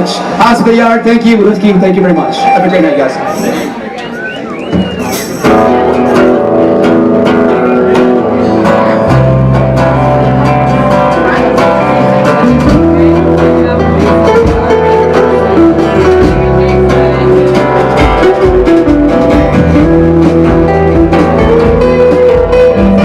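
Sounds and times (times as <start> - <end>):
strummed guitar chords: 1.6 - 23.0
low bass notes: 4.8 - 23.0.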